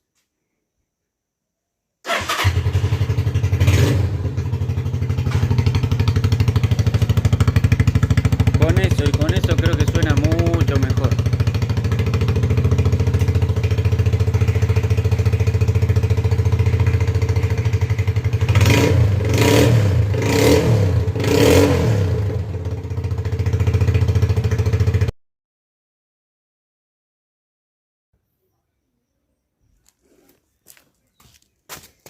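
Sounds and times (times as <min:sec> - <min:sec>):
motorcycle engine idling and revving: 0:02.1 - 0:25.1.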